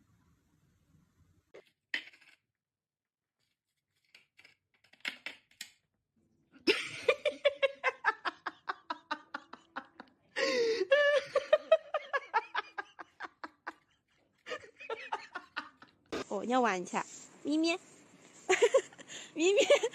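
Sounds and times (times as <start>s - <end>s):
person laughing hard: 6.7s - 13.9s, 14.5s - 15.9s.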